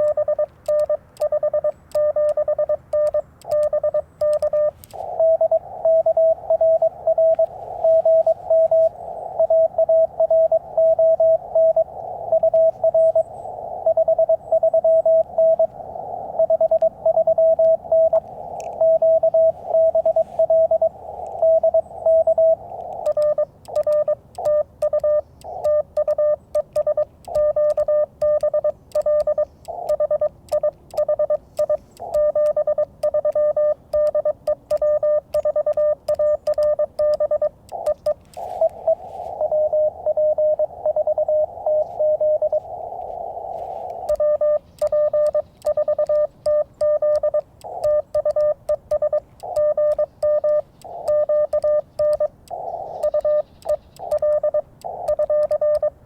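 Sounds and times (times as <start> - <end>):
faint radio band noise: 0.0 - 56.0
higher-pitched morse signal: 0.0 - 56.0
morse code tones: 0.0 - 56.0
morse key paddle clicks: 22.7 - 38.8, 44.0 - 55.9.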